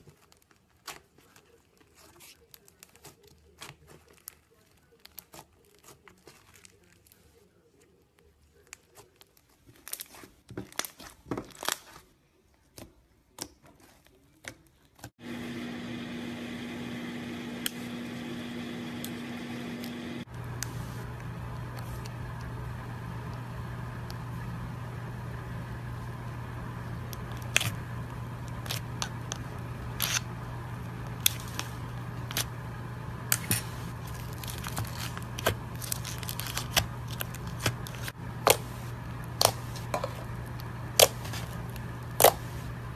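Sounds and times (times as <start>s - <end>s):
steady background hum: 15.2s - 42.9s.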